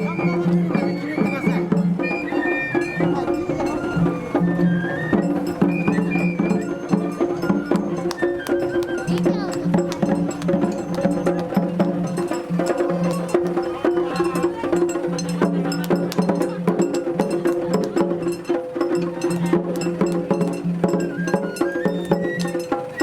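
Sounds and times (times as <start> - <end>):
sustained pitched tones: 0.0 - 13.4
festival drums and wood blocks: 0.0 - 23.0.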